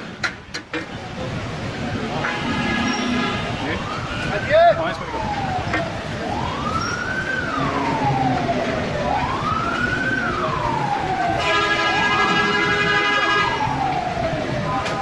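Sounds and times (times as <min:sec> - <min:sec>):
street noise: 0:00.0 - 0:15.0
siren wailing: 0:03.2 - 0:15.0.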